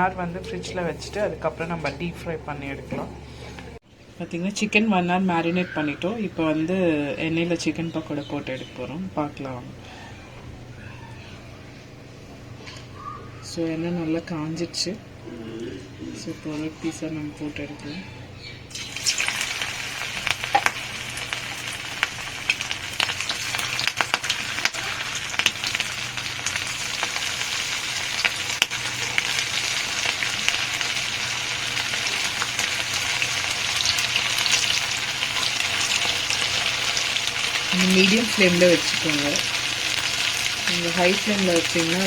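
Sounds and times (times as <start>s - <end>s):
chicken deep-frying in hot oil: 18.7s - 42.0s.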